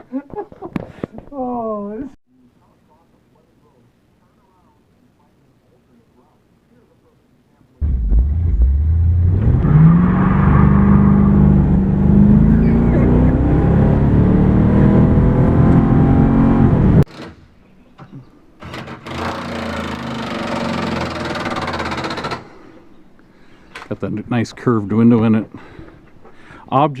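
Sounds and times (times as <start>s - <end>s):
engine revving: 7.8s - 17.1s.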